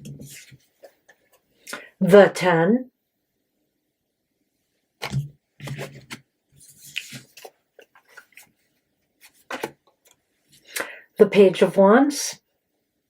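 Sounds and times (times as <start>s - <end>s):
cards rustling: 5.6s - 9.8s.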